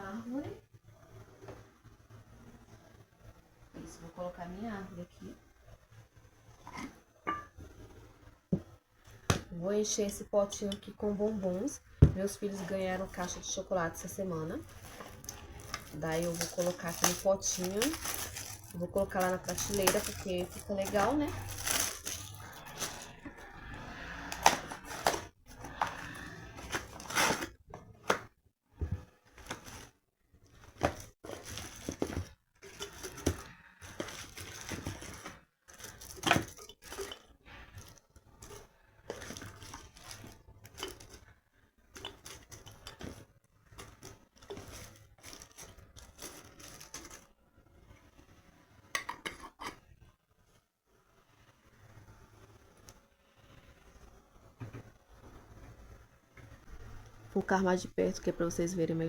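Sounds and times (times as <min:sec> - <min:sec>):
rustling: 0:11.7 - 0:28.1, 0:28.8 - 0:47.3
objects clinking and knocking: 0:30.7 - 0:41.2.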